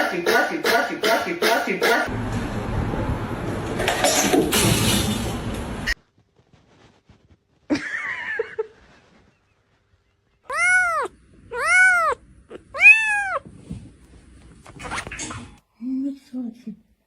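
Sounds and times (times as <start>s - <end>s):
cat meowing: 10.5s - 13.6s.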